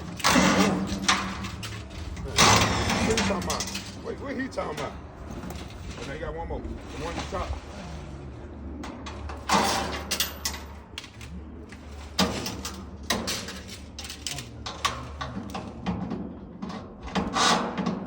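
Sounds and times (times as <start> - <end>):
metal knocks and clanks: 0.0 - 6.1.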